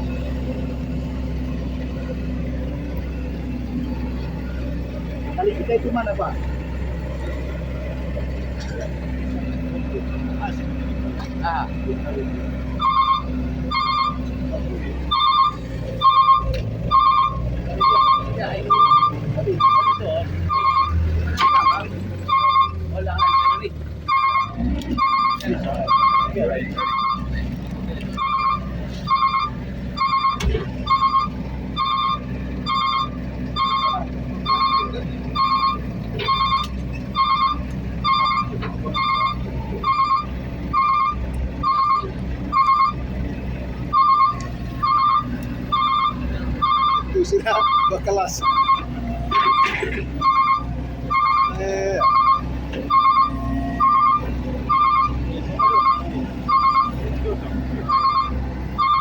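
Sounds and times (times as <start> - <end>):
diesel engine running: 0.0 - 59.0
reversing alarm beeping: 12.7 - 14.4, 15.0 - 27.4, 28.1 - 43.1, 43.8 - 59.0.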